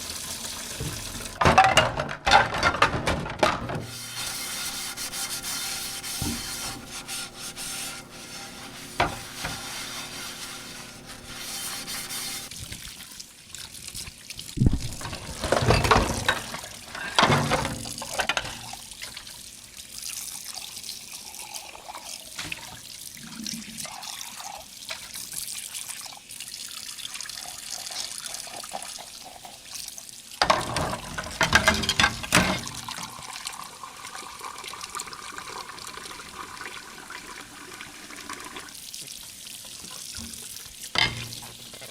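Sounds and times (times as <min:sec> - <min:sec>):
water running and splashing: 0:00.0 - 0:01.4, 0:03.8 - 0:17.0
dishes clinking together: 0:41.0 - 0:41.4.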